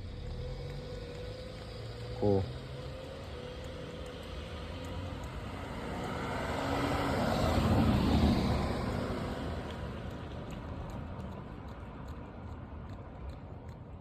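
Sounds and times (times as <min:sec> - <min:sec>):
vehicle passing by: 0:00.0 - 0:13.4.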